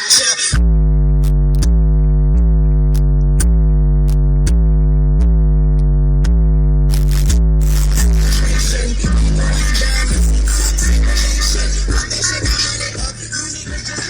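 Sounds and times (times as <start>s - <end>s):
deep synthesizer bass: 0.5s - 14.0s.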